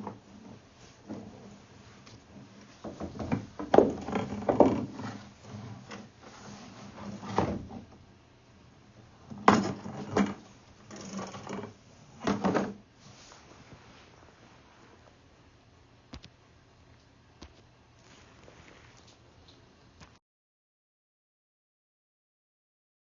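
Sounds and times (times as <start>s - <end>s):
knocks and clunks of objects handled: 0.0s - 6.1s.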